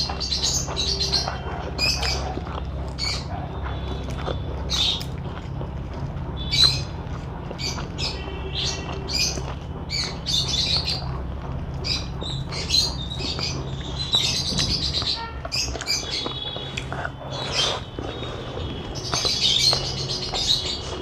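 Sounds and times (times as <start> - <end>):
small birds chirping: 0.0 - 21.0
steady low hum: 0.0 - 21.0.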